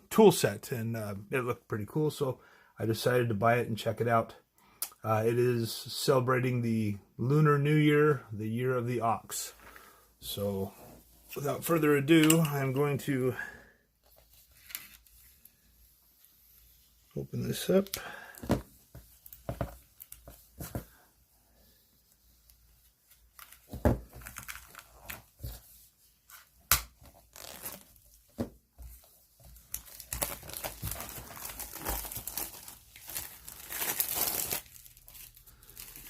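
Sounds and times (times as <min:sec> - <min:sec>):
packaging tearing and crinkling: 0:27.3 - 0:28.0, 0:29.7 - 0:36.0.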